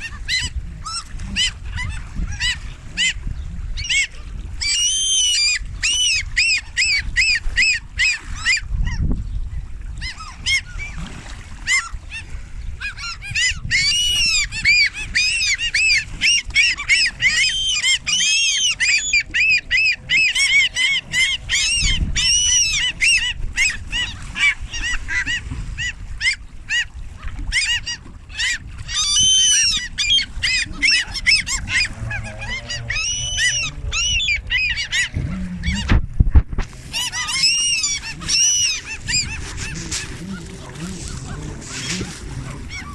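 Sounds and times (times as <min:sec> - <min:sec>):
low wind rumble: 0:00.0 - 0:27.5, 0:29.6 - 0:42.9
flock of birds calling: 0:11.7 - 0:36.0, 0:36.7 - 0:42.9.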